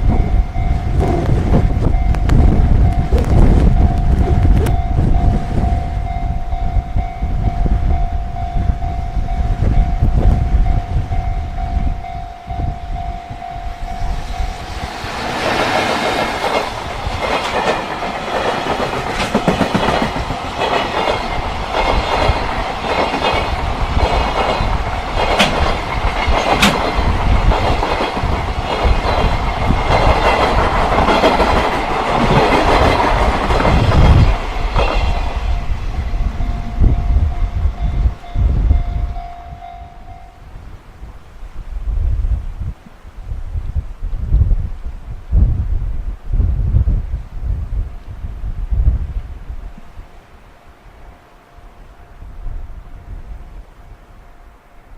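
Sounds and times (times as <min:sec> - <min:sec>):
level-crossing warning bell: 0:00.0 - 0:15.0, 0:34.0 - 0:40.5
wind rumbling on microphone: 0:00.0 - 0:54.8
train wheels clattering over joints: 0:14.9 - 0:35.6.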